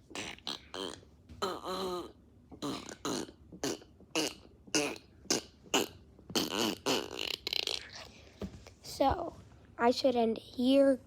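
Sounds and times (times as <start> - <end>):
fart noises blown into hands: 0.0 - 8.1.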